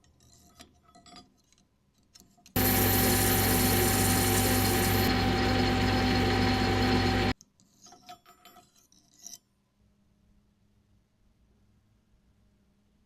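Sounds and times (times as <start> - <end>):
lathe running: 2.6 - 7.4
metal clinks and rubs: 7.6 - 9.5.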